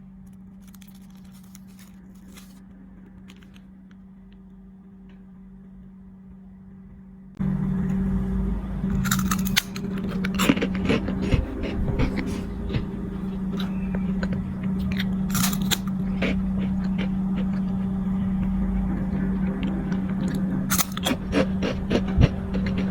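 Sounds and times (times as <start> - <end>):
steady low hum: 0.0 - 22.9
crunching of a snack: 0.2 - 3.7, 8.9 - 18.0, 19.4 - 22.9.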